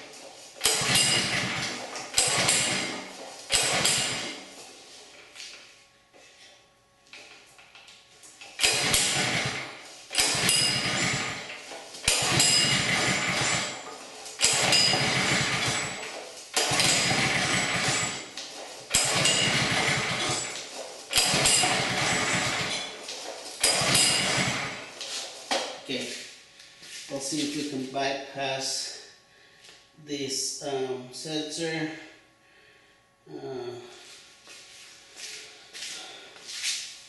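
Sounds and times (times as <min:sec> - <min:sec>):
engine being pull-started: 0:00.0 - 0:05.3, 0:08.4 - 0:25.8.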